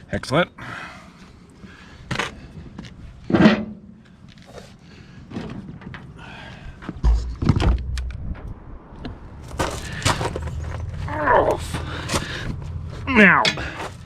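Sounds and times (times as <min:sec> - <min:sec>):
heavy low thump: 0:06.9 - 0:10.6.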